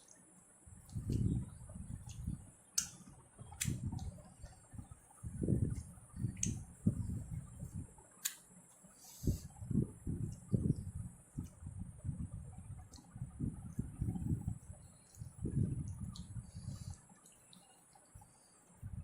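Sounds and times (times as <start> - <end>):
close chewing of soft food: 0.0 - 4.6, 12.7 - 18.0
wet mouth clicks and smacks: 3.6 - 4.1, 5.7 - 6.6, 15.9 - 16.3.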